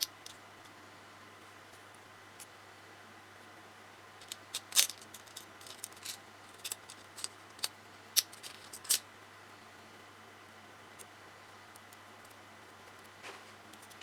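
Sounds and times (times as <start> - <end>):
plastic parts clicking and snapping: 4.2 - 9.0.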